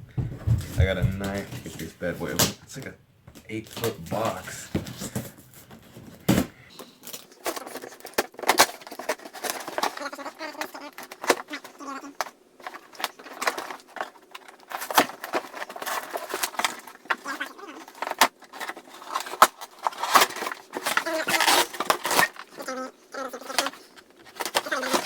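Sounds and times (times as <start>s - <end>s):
knocks and clatters: 0.0s - 2.5s
cardboard tearing and crinkling: 3.7s - 6.5s, 7.1s - 25.0s.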